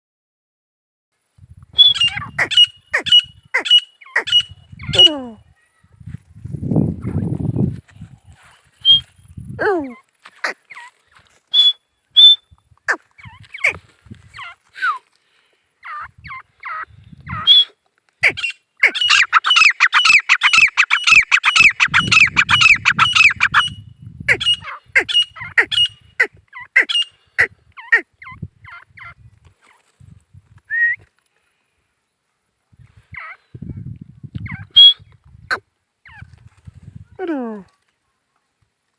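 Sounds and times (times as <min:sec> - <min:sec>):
francolin calling: 0:01.8 - 0:05.4, 0:09.9 - 0:15.0, 0:15.8 - 0:29.8.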